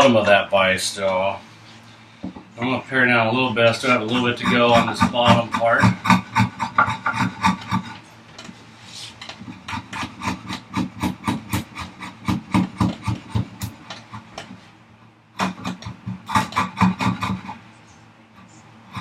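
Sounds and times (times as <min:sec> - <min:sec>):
hand tool scraping hardwood: 0:03.6 - 0:08.0, 0:08.8 - 0:14.6, 0:15.4 - 0:17.6.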